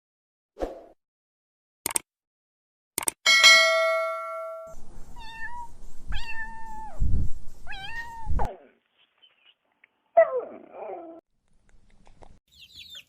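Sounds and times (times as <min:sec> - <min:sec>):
bell-like ding: 0:03.3 - 0:04.8
kitten meowing: 0:05.2 - 0:07.0, 0:07.6 - 0:08.5.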